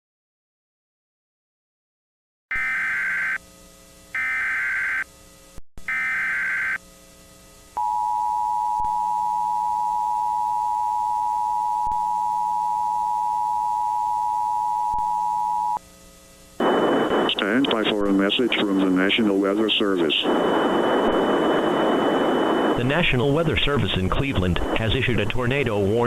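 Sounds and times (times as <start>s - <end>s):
warbling data bursts: 2.5s - 3.4s, 4.2s - 5.0s, 5.9s - 6.8s.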